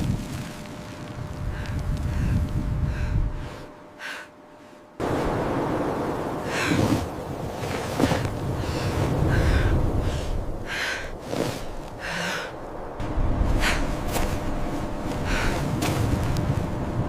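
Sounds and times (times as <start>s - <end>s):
person breathing hard: 1.5s - 4.9s, 8.5s - 12.7s, 15.1s - 15.8s
low rumble: 5.0s - 17.0s.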